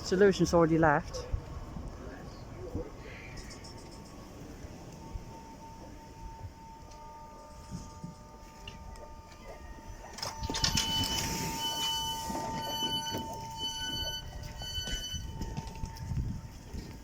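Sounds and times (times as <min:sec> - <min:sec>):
train humming: 0:00.0 - 0:17.0
short high beeps: 0:10.2 - 0:15.9.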